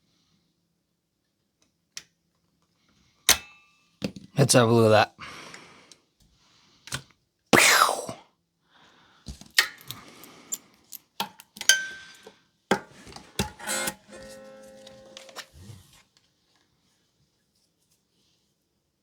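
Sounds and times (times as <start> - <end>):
guitar string plucked: 13.6 - 15.8
metal tools clinking on guitar: 13.6 - 15.8.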